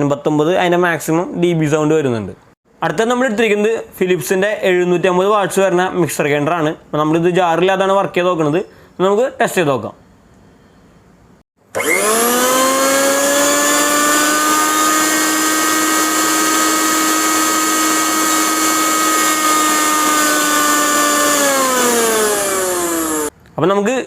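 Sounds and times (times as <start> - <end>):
mixer grinder motor whine: 11.7 - 23.3.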